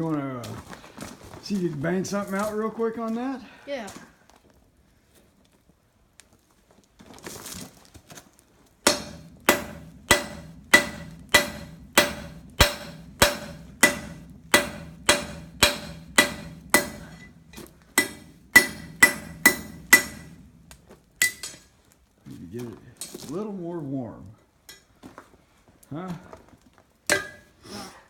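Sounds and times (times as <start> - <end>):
hammer striking hot metal: 8.8 - 21.7, 27.1 - 27.6.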